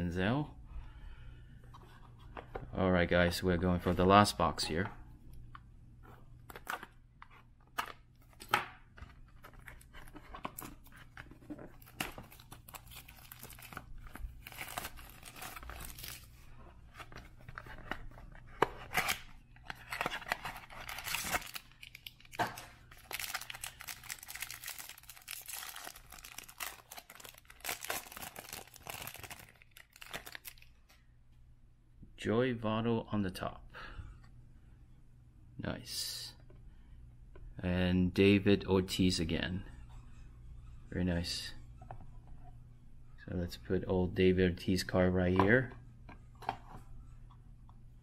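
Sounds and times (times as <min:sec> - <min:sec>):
packaging tearing and crackling: 0:11.8 - 0:16.3, 0:18.9 - 0:30.7.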